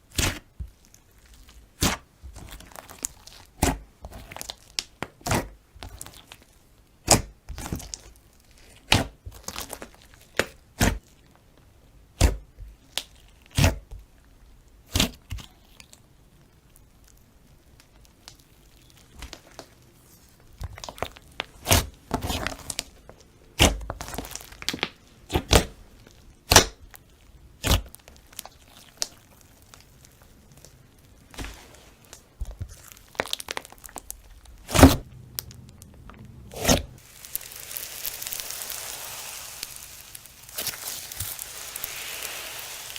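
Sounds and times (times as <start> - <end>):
slime popping and crackling: 0.1 - 11.1, 16.8 - 23.0, 23.6 - 42.9.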